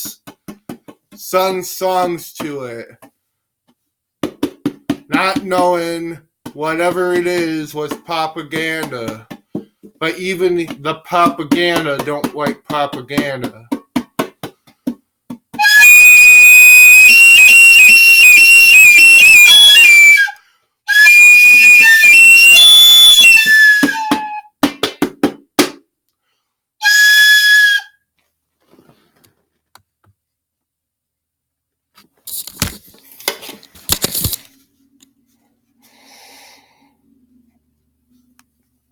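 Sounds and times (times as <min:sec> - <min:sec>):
shrill whistled notes: 0:15.6 - 0:24.5, 0:26.8 - 0:28.0.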